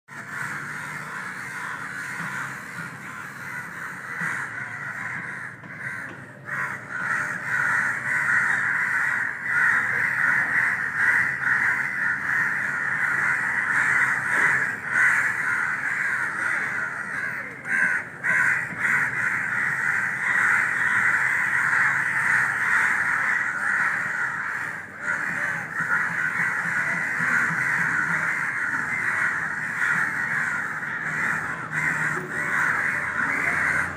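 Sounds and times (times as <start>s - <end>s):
crow cawing: 0.1s - 33.9s.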